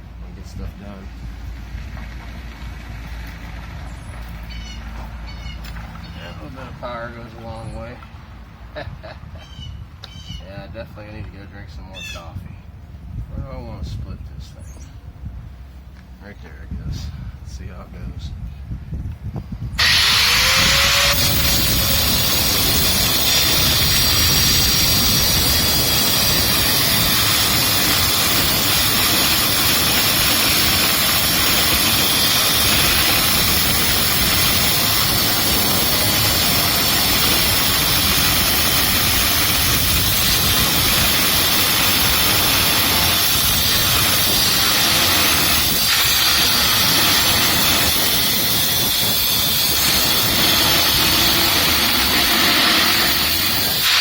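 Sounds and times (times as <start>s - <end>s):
angle grinder cutting metal: 19.8s - 54.0s.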